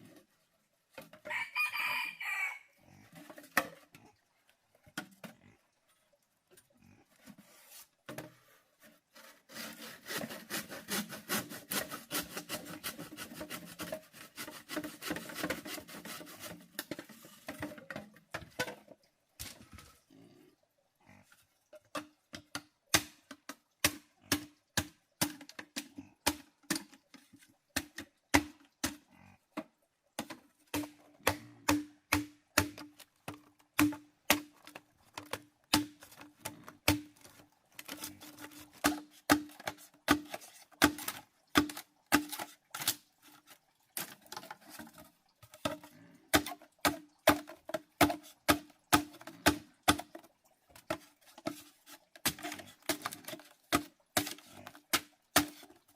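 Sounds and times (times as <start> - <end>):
blade chopping on wood: 30.2 - 34.5, 36.8 - 37.2, 45.6 - 50.2.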